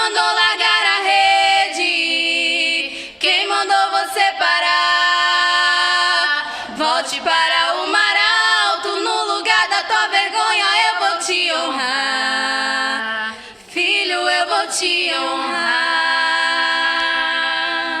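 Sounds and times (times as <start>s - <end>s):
vocal group singing in harmony: 0.0s - 18.0s.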